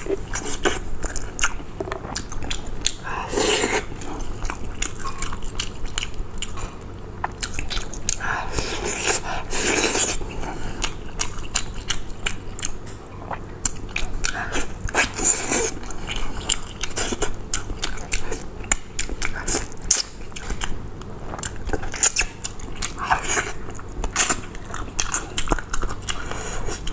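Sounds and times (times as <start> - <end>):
person chewing food: 0.0 - 26.9.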